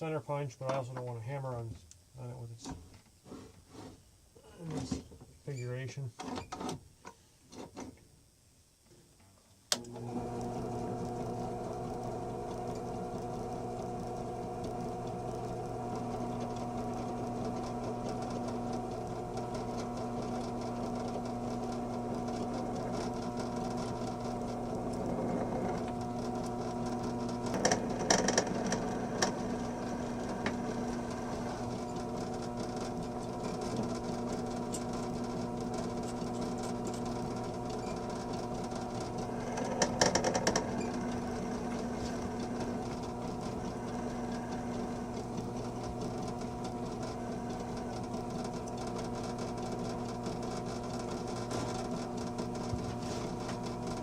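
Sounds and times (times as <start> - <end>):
electric drill drilling through steel: 9.8 - 52.7
drill bit scraping chatter: 10.1 - 52.6.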